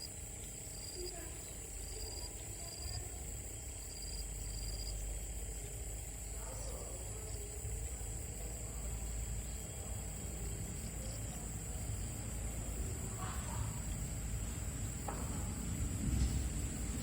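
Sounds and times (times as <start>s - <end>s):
insects droning: 0.0s - 17.0s.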